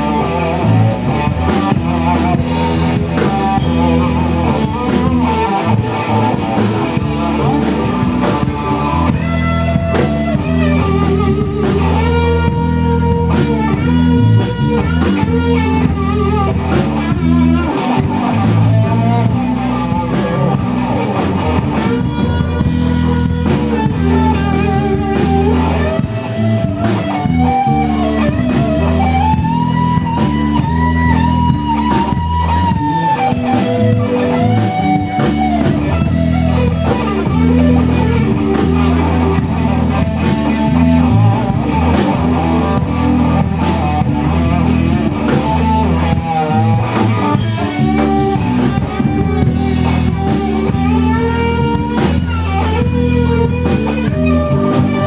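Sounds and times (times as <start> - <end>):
bass guitar: 0.0 - 55.0
drum kit beat: 0.0 - 55.0
electric guitar solo: 0.0 - 55.0.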